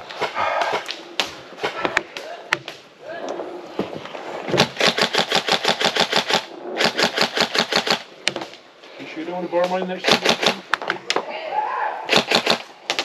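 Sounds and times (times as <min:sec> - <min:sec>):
airsoft gun firing full auto: 0:04.6 - 0:08.1, 0:10.0 - 0:10.6, 0:12.1 - 0:13.0.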